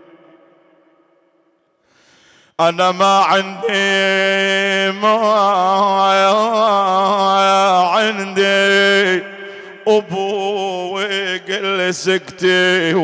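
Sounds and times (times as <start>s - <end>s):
man chanting a lament: 2.6s - 13.0s.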